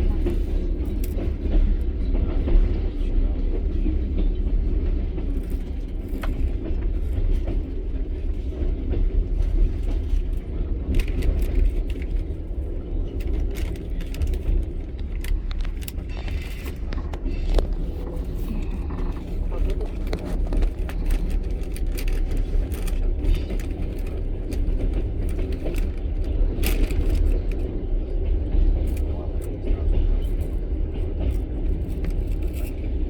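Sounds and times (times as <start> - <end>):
train wheels rumbling on rails: 0.0 - 33.0
clicks and rattles: 13.1 - 27.7.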